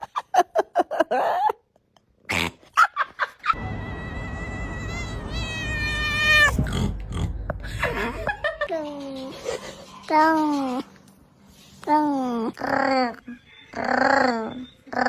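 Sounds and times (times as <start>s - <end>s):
cat meowing and yowling: 3.6s - 6.6s
low rumble: 3.6s - 8.7s.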